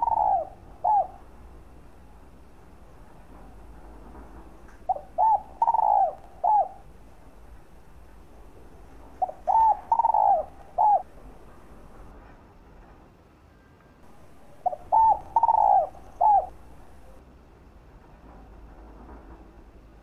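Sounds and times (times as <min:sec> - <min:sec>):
dove cooing: 0:00.0 - 0:01.8, 0:04.8 - 0:07.2, 0:08.9 - 0:12.0, 0:14.1 - 0:17.2.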